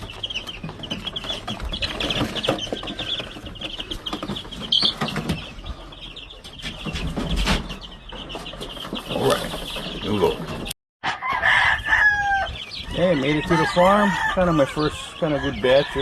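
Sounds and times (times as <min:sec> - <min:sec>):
chicks peeping: 0:00.0 - 0:16.0.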